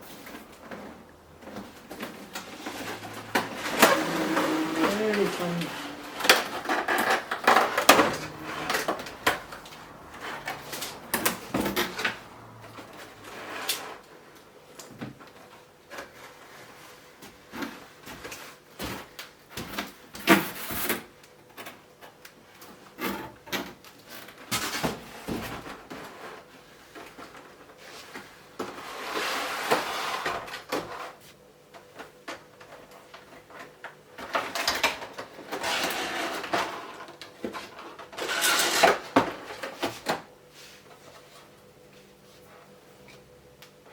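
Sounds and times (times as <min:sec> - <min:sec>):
cardboard and plastic packaging rustling: 0:00.0 - 0:14.4.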